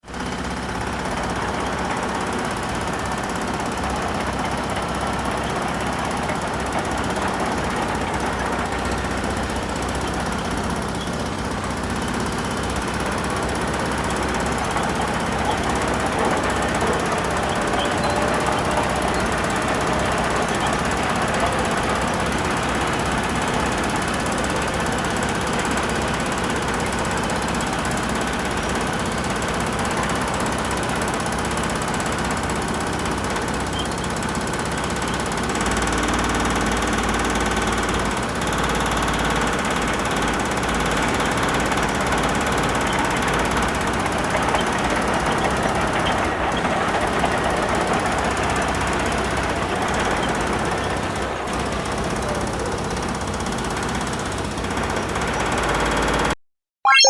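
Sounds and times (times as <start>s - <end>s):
diesel engine with mechanical clatter: 0.0s - 56.4s.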